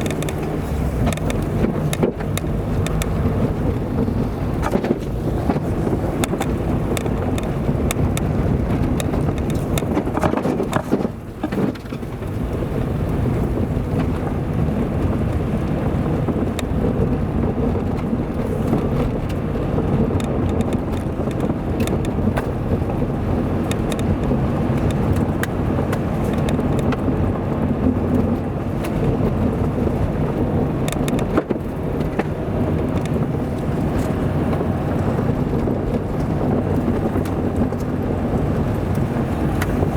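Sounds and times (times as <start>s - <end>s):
clicks and knocks: 0.0s - 12.4s
car engine and road noise: 0.0s - 39.9s.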